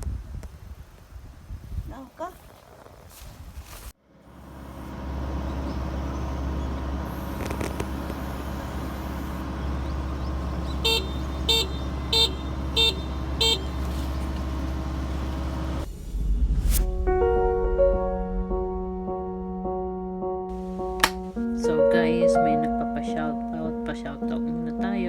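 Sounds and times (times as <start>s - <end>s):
combine harvester engine running: 4.0s - 16.2s.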